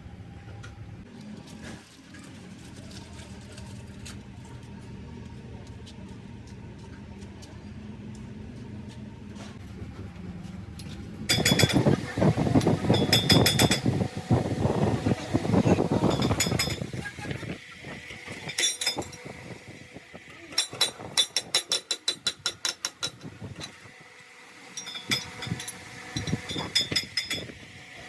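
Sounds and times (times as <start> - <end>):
metallic clanking: 24.7 - 27.6.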